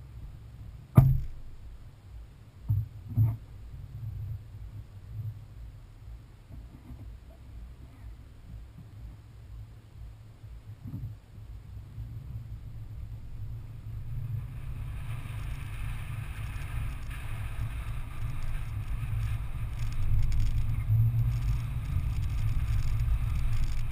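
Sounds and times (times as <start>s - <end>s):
engine and tyres rumbling: 0.0s - 23.9s
small crackles: 13.3s - 23.9s.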